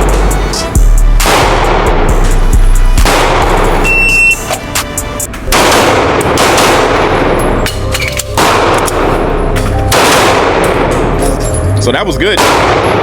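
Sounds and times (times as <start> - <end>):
loud pistol shots: 1.2 - 2.0, 3.0 - 3.8, 5.5 - 7.6, 8.3 - 9.2, 9.9 - 11.2, 12.3 - 13.0.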